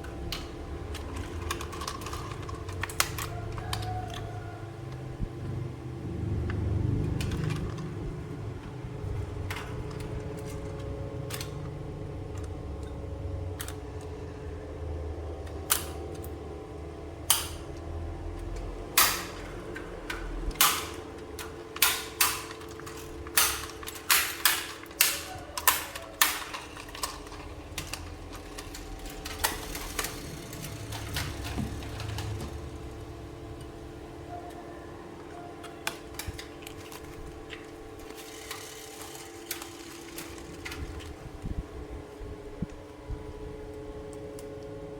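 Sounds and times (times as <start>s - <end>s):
steady low hum: 0.0s - 44.9s
plastic toy pieces clicking: 0.2s - 4.3s, 20.1s - 32.5s, 35.6s - 41.1s.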